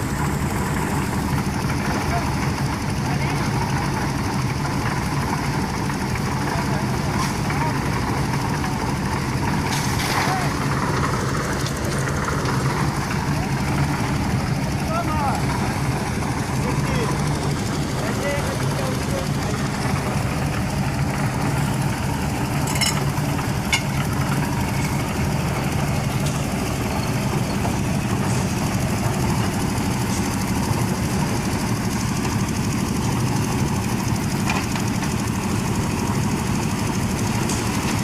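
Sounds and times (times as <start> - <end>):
engine running steadily: 0.0 - 38.0.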